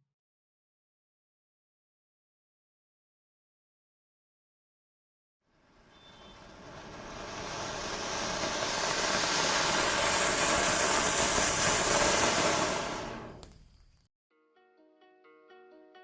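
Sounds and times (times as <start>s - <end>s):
firework fountain hissing: 5.5s - 13.8s.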